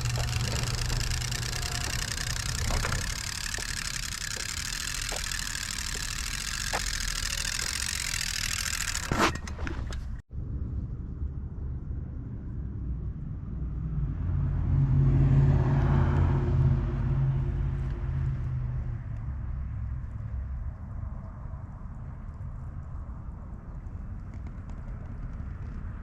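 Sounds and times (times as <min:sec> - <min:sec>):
vehicle engine rumbling: 0:00.0 - 0:10.2.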